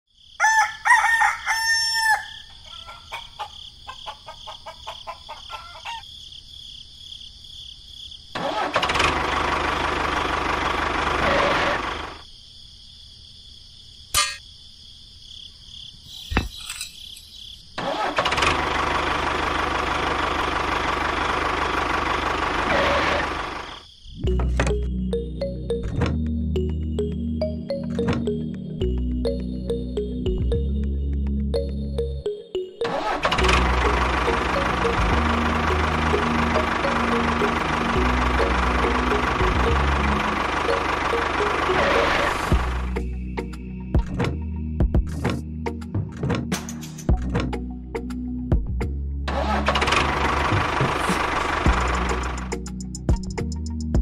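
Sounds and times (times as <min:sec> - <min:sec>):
rooster crowing: 0:00.4 - 0:06.1
small engine running: 0:08.4 - 0:12.2, 0:17.8 - 0:23.8, 0:32.8 - 0:43.0, 0:49.3 - 0:52.8.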